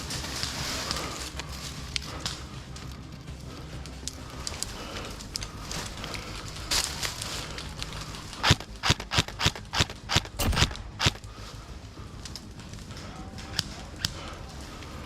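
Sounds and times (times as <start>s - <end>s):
low outdoor background: 0.0s - 15.0s
sharp cracks: 3.8s - 14.9s.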